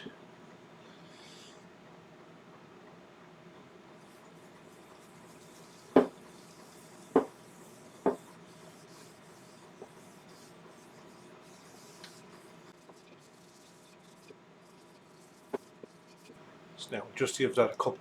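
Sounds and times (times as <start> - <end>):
faint steady rubbing: 3.9 - 16.4
sharp knocks on wood: 6.0 - 6.2, 7.1 - 7.4, 8.0 - 8.2.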